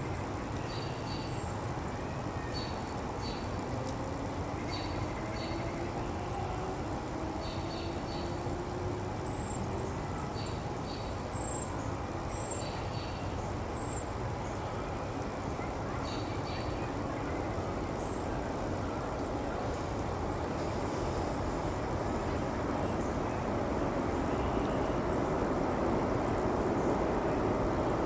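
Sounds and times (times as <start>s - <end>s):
low outdoor rumble: 0.0s - 28.0s.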